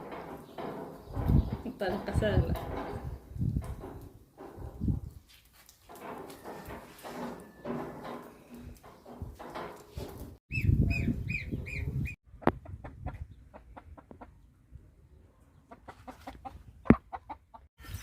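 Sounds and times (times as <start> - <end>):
chickens clucking: 10.9 - 14.5, 15.5 - 17.7.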